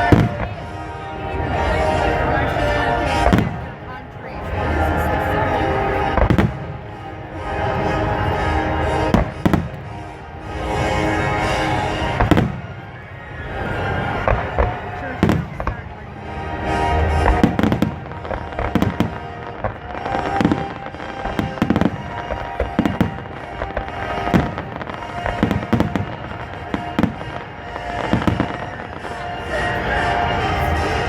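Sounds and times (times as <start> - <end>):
fireworks bursting with bangs: 0.0 - 31.0
music playing: 0.0 - 31.0.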